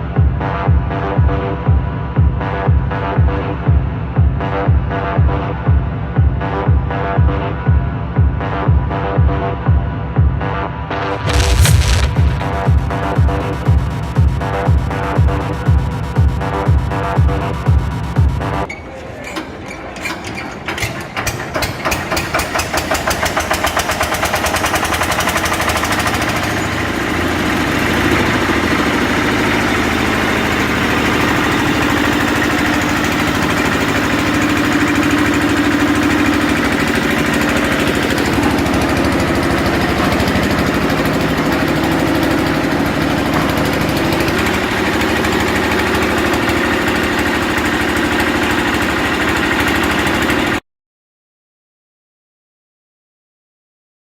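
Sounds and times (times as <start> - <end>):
concrete mixer engine starting up: 19.5 - 50.6.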